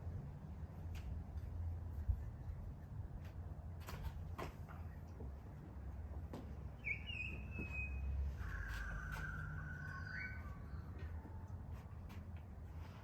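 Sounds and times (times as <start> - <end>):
bird whistling long notes: 9.1 - 10.8.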